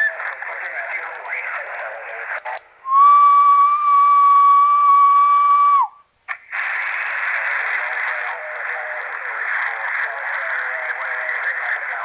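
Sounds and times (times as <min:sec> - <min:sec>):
radio band hiss: 0:00.0 - 0:02.9, 0:06.2 - 0:12.0.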